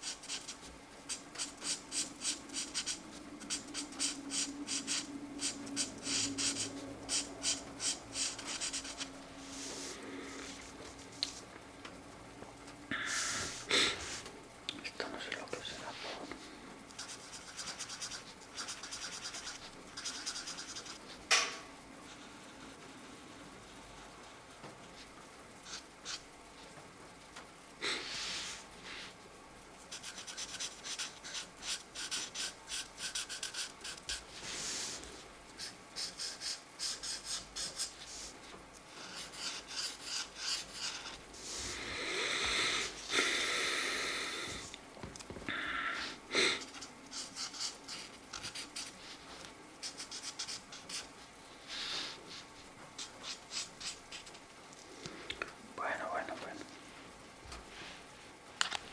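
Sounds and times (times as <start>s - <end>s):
markers scratching on paper: 0.0s - 9.9s, 17.0s - 21.2s, 25.6s - 26.2s, 29.9s - 38.3s, 38.9s - 41.6s, 46.6s - 51.2s, 53.0s - 54.4s.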